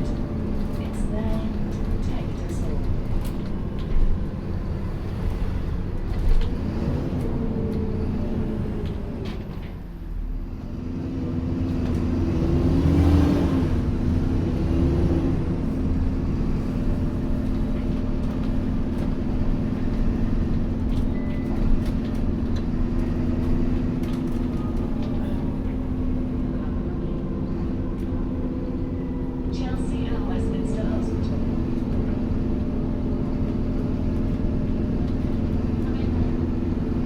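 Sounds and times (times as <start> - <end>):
bus diesel engine: 0.0 - 37.0.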